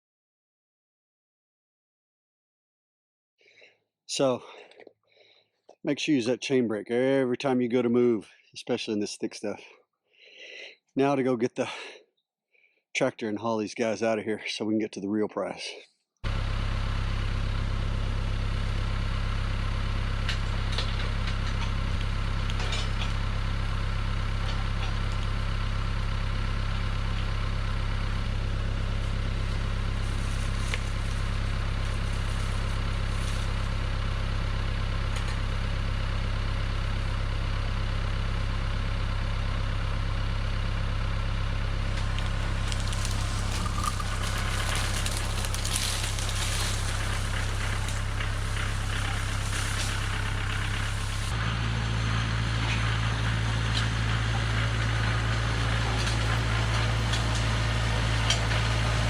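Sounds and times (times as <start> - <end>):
tractor diesel engine running: 16.2 - 59.0
brush crackling and snapping: 28.3 - 33.9, 41.8 - 51.4.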